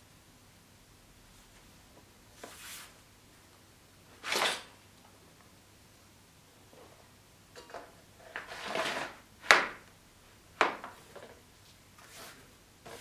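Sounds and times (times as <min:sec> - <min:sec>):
short scrape: 0:08.4 - 0:09.2.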